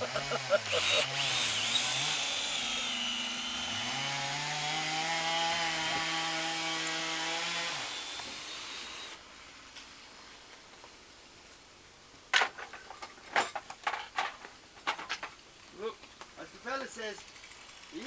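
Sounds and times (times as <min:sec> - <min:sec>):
electric drill drilling wood: 0:00.4 - 0:09.2.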